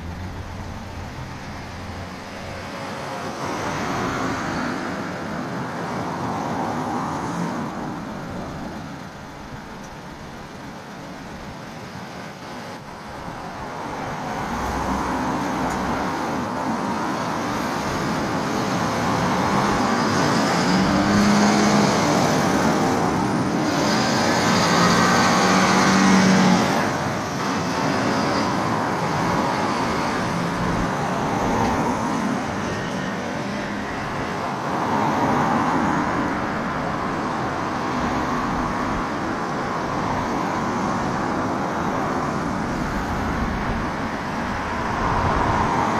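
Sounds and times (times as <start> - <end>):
road traffic passing: 0.0 - 45.9.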